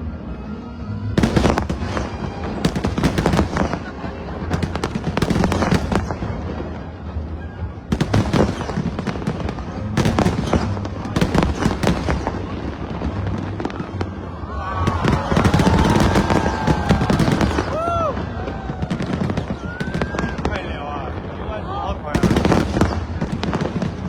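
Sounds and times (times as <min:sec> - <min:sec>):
fireworks bangs and crackles: 0:00.0 - 0:24.0
fireworks whistling: 0:01.2 - 0:06.2, 0:14.8 - 0:20.7.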